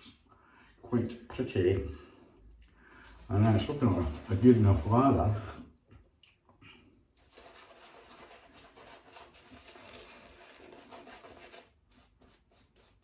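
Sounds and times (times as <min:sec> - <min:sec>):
shaving brush swishing lather: 0:03.1 - 0:05.2, 0:07.2 - 0:13.0.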